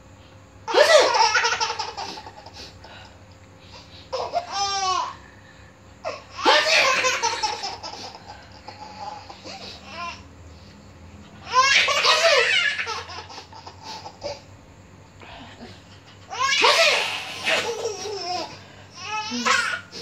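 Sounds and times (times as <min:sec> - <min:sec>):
small child laughing: 0:00.7 - 0:02.8, 0:06.0 - 0:10.2, 0:11.4 - 0:14.5, 0:16.0 - 0:20.0.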